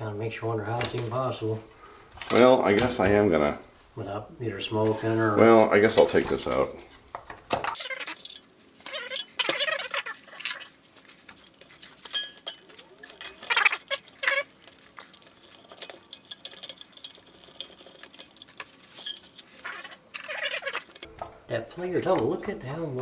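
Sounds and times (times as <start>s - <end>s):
metal engine parts and tools clinking: 4.8s - 23.0s.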